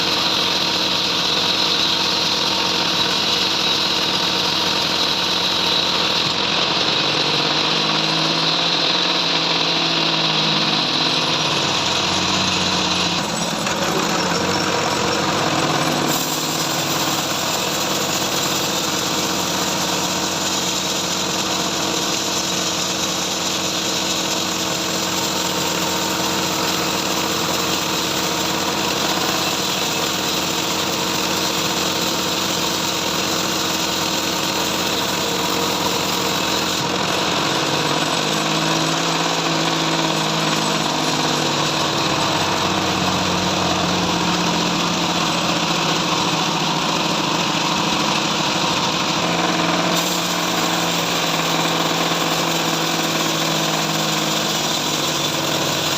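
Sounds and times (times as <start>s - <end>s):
bandsaw mill sawing log: 0.0s - 55.9s.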